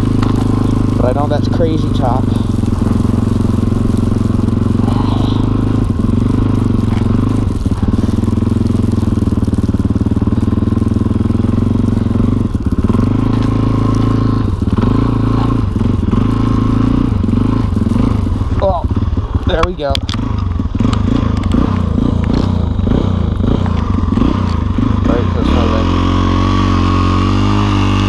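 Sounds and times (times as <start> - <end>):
motorcycle engine running: 0.0 - 28.0.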